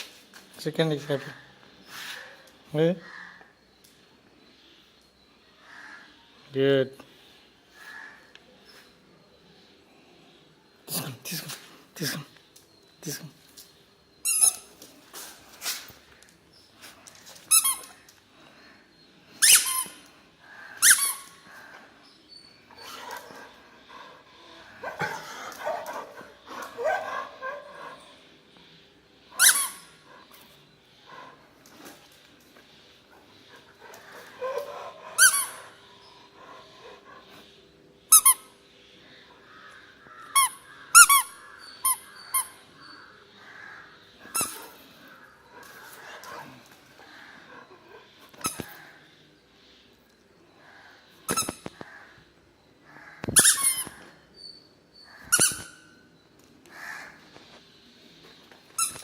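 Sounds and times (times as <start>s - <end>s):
squeaky dog toy squeaks: 14.2s - 14.7s, 17.5s - 18.0s, 19.4s - 20.0s, 20.8s - 21.4s, 29.4s - 29.9s, 35.2s - 35.6s, 38.1s - 38.4s, 40.4s - 42.6s, 51.3s - 51.6s, 53.4s - 54.0s, 55.3s - 55.9s, 58.8s - 59.0s.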